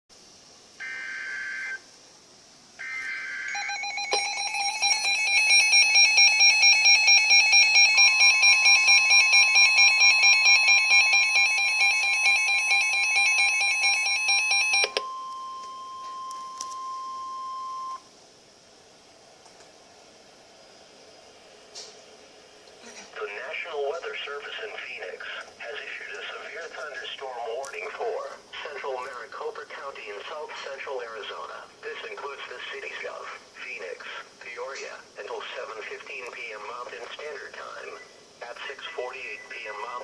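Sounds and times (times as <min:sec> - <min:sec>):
pulsing alarm tone: 0:00.8 - 0:01.8, 0:02.8 - 0:18.0.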